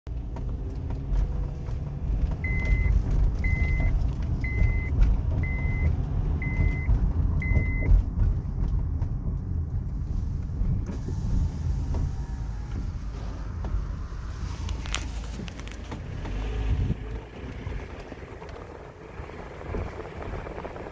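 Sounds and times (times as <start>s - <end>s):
car road rumble: 0.1s - 20.9s
suspension knocks: 0.1s - 20.9s
high beep: 2.5s - 7.9s.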